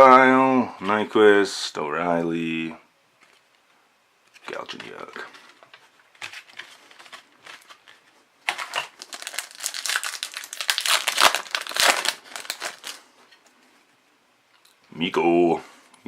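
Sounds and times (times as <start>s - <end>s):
wrapper being torn and crumpled: 6.4s - 13.0s.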